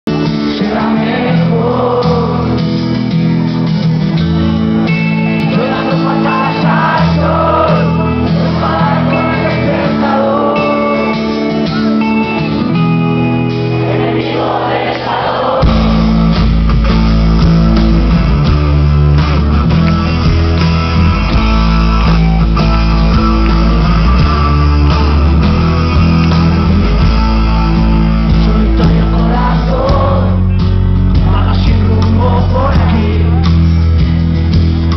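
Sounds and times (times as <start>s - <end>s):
live rock band: 0.1s - 34.9s
person singing: 5.4s - 11.4s, 28.2s - 33.5s.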